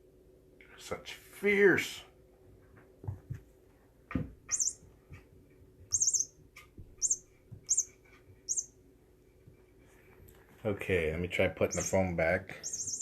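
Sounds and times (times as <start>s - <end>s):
high bird-like chirps: 4.5s - 4.8s, 5.9s - 6.4s, 7.0s - 8.8s, 11.7s - 13.0s.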